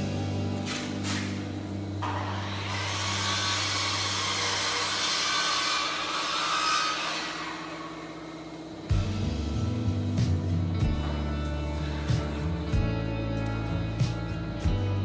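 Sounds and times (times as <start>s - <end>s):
saw cutting through wood: 0.6s - 9.0s.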